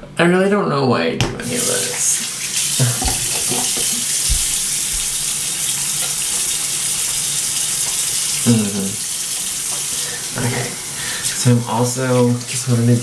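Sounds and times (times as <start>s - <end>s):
tap running into sink: 1.2s - 11.4s.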